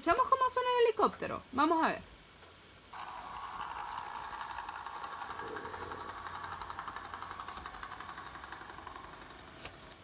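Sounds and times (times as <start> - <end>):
helicopter rotor chopping: 3.0 - 10.0.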